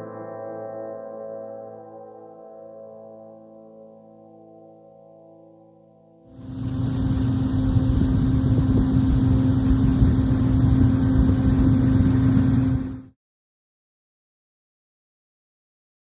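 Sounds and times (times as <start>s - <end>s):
machine running with hum: 6.3s - 13.2s.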